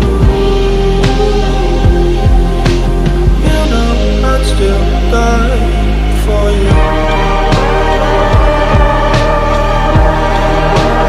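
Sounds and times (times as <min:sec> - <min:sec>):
steady low bass: 0:00.0 - 0:11.0
sustained synth chords: 0:00.0 - 0:11.0.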